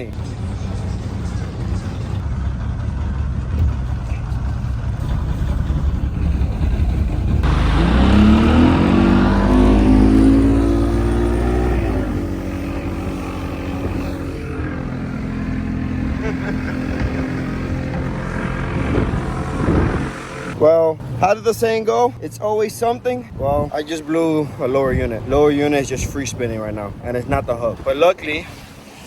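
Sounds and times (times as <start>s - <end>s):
outboard motor running: 0.1s - 20.6s.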